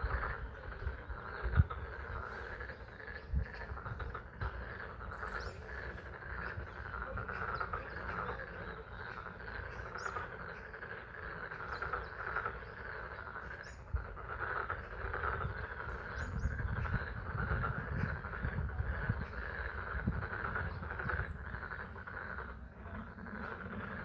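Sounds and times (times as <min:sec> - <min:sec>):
chorus of frogs calling: 0:00.0 - 0:24.0.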